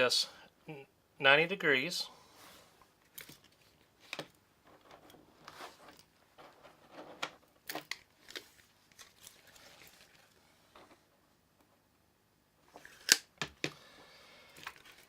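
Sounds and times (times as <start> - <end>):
rustling: 2.3 - 11.3, 14.0 - 15.0.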